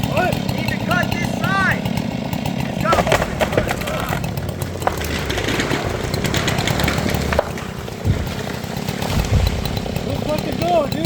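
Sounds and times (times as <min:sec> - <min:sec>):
chainsaw idling: 0:00.0 - 0:11.0
dull thuds: 0:02.8 - 0:10.5.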